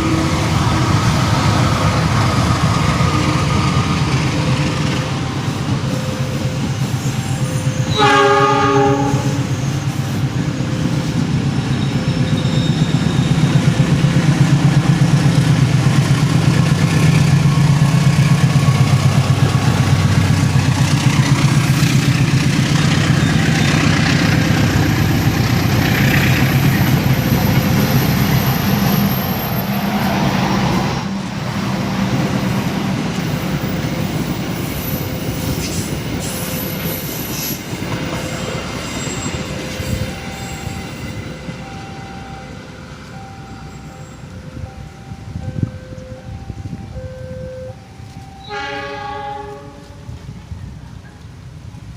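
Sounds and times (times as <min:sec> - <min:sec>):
train horn blast: 0:03.0 - 0:10.2, 0:48.4 - 0:50.2.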